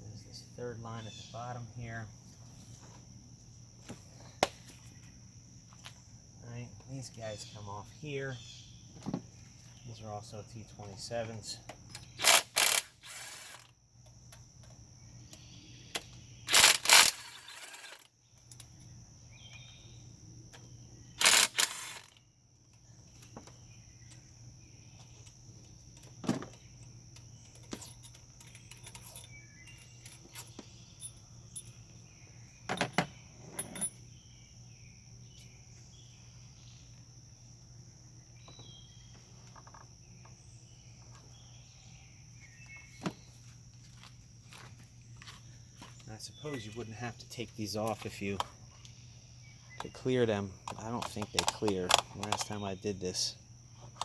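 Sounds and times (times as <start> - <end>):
tools and fasteners clinking: 11.6 - 19.0, 21.2 - 22.2, 25.0 - 32.0, 32.6 - 34.0, 45.9 - 48.6, 49.7 - 52.8
bursts of rapid clicks: 16.5 - 18.0, 21.2 - 22.1.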